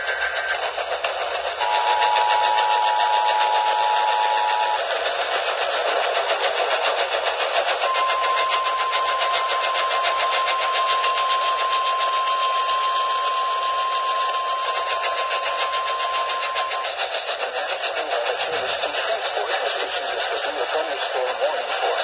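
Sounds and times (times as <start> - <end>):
pulsing radio static: 0.0 - 6.9, 14.6 - 22.0
steady high warning beep: 7.8 - 16.7.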